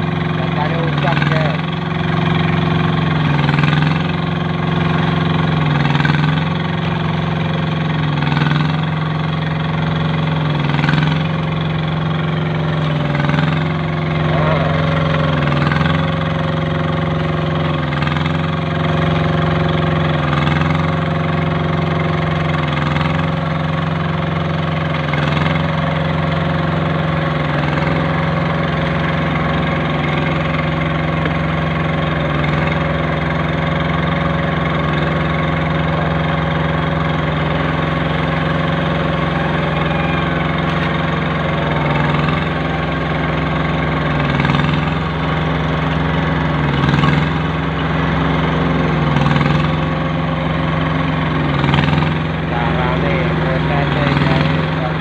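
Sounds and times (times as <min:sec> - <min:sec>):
machine engine running: 0:00.0 - 0:55.0.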